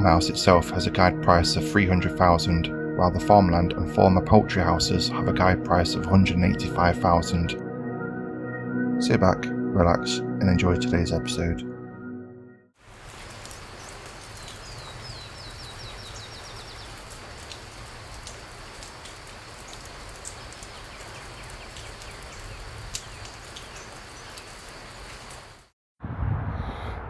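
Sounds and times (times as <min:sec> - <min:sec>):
steady outdoor hiss: 0:12.8 - 0:25.6
small bird singing a trill: 0:14.4 - 0:17.0
light ticks: 0:17.0 - 0:25.4.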